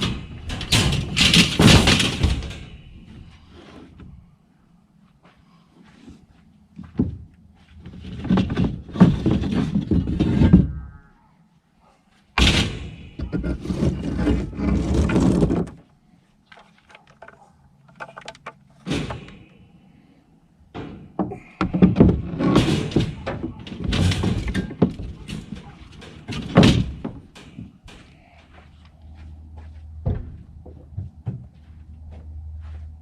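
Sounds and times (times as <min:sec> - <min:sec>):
knocks and thunks: 0:00.0 - 0:03.3, 0:06.8 - 0:07.3, 0:12.4 - 0:15.8, 0:18.2 - 0:19.5, 0:20.7 - 0:28.1, 0:30.0 - 0:31.6
junk clattering and scraping: 0:00.0 - 0:04.3, 0:05.9 - 0:11.0, 0:12.4 - 0:19.7, 0:20.7 - 0:32.8.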